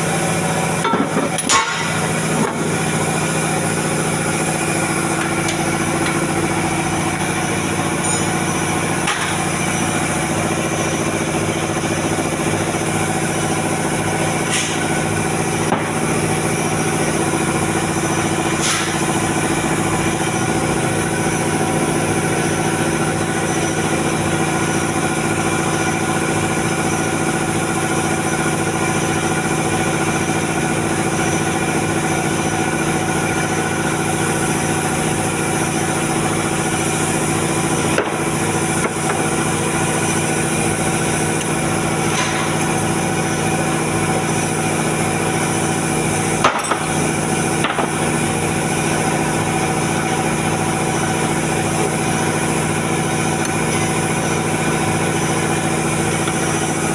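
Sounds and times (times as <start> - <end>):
machinery humming: 0.0 - 56.9.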